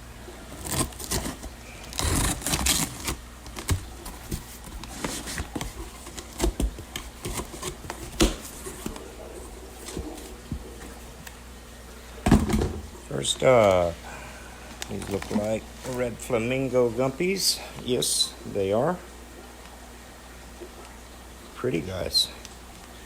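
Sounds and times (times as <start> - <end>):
packaging rustling and crinkling: 0.4 - 11.4, 14.7 - 16.2.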